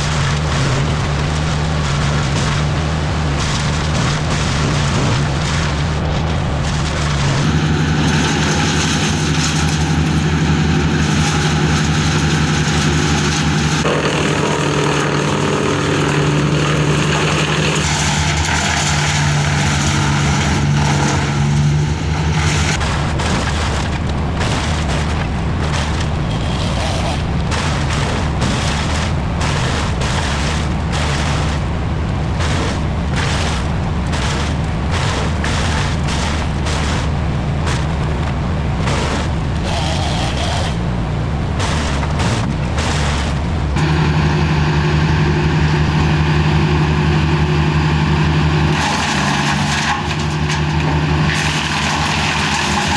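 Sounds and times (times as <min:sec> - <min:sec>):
heavy machinery engines running: 0:00.1 - 0:22.8, 0:43.6 - 0:52.9.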